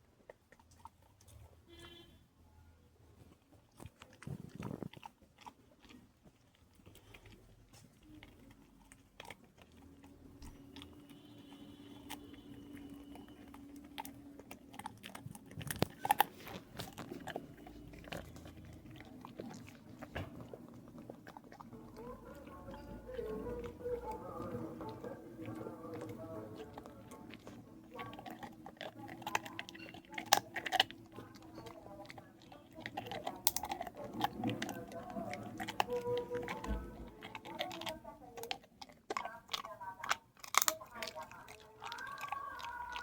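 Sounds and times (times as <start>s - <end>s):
animal cracking walnuts: 12.0s - 43.0s.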